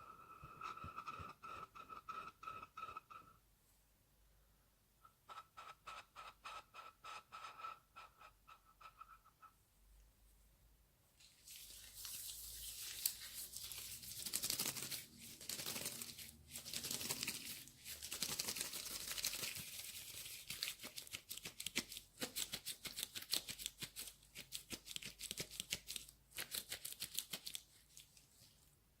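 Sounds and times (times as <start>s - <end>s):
hands crinkling something dry: 11.2s - 28.5s.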